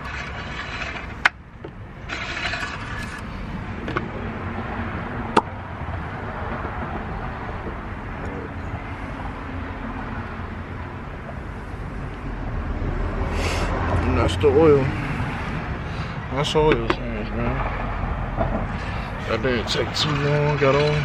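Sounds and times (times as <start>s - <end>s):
outdoor background noise: 0.0s - 21.0s.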